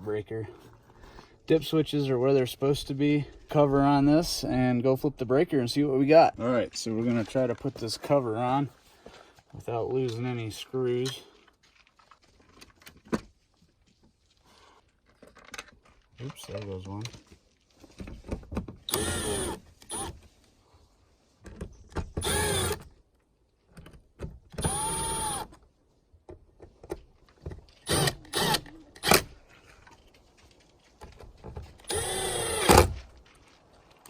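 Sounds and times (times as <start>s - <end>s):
cordless drill driving screws: 18.9s - 20.2s, 22.2s - 22.9s, 24.6s - 25.5s, 27.8s - 29.3s, 31.8s - 33.0s.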